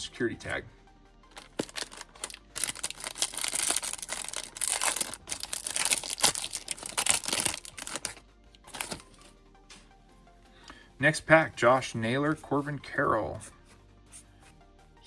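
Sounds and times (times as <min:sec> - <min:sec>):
foil wrapper crinkling and tearing: 0:01.3 - 0:09.2.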